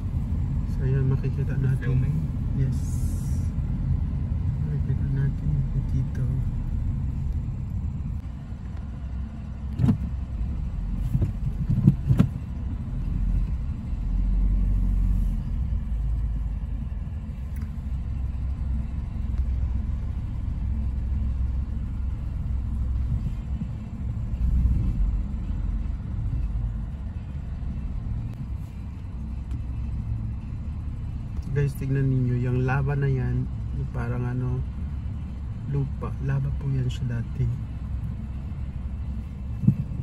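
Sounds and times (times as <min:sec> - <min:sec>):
car interior low rumble: 0:00.0 - 0:40.0.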